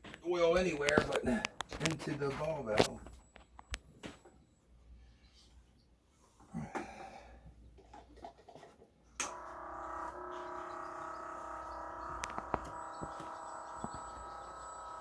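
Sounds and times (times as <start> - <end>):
electric pump humming: 9.2 - 15.0.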